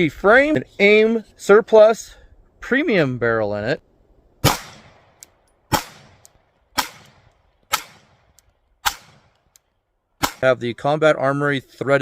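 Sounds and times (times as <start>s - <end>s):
pistol shots with echo: 4.4s - 9.4s, 10.2s - 10.5s
faint small clicks: 8.3s - 8.6s, 9.3s - 9.7s.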